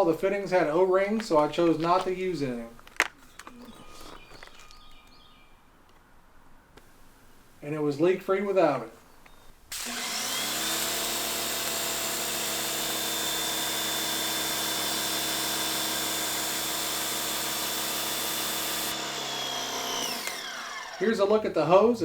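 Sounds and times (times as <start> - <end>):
pressure washer motor whining: 9.7 - 21.6.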